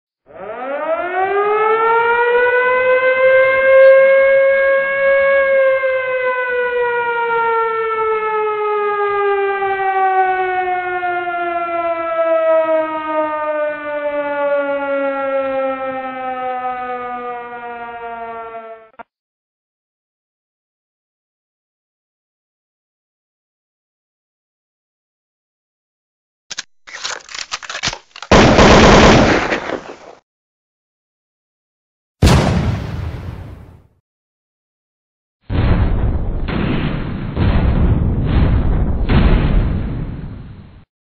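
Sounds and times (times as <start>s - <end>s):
siren wailing: 0.2s - 19.1s.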